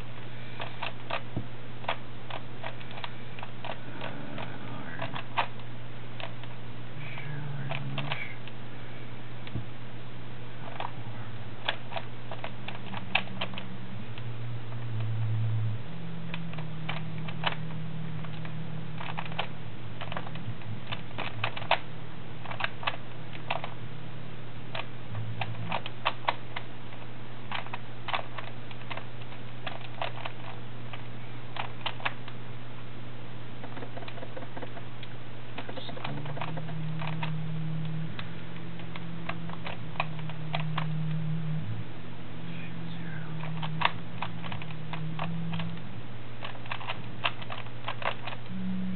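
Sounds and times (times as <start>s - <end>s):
steady low hum: 0.0s - 48.9s
puzzle cube clicking: 0.6s - 6.6s, 7.2s - 8.6s, 11.6s - 15.2s, 16.0s - 23.8s, 24.7s - 32.4s, 33.6s - 34.9s, 35.6s - 41.7s, 42.4s - 48.9s.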